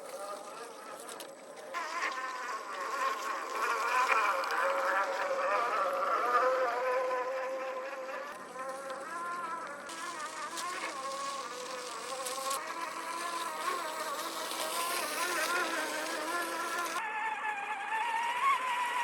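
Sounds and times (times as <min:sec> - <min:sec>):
electric motor whining: 0:00.0 - 0:19.0
background hiss: 0:08.2 - 0:17.0.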